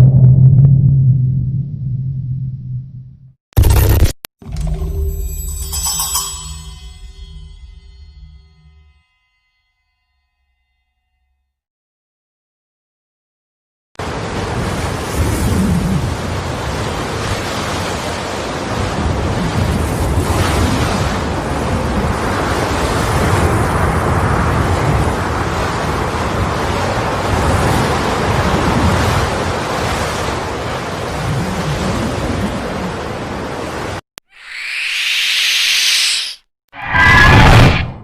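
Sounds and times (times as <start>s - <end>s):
deep rumble: 0.0s - 3.8s
loud rushing noise: 34.4s - 38.0s.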